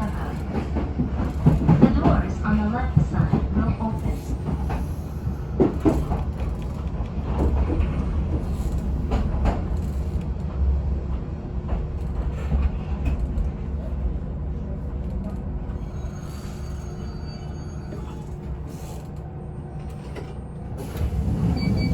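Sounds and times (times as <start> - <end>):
wheels clanking and squealing on rails: 0.0 - 10.6, 15.0 - 21.9
train running gear rumble: 0.0 - 21.9.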